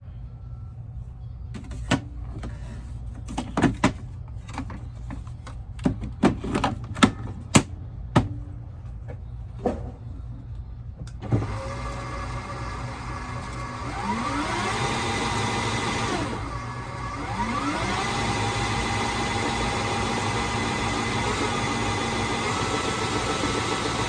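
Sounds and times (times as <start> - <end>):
electric mower motor whine: 11.2 - 24.0.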